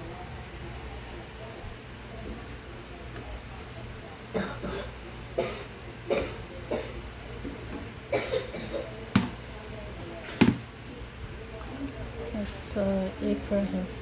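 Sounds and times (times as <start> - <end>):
person coughing: 4.4 - 7.0, 8.1 - 8.9.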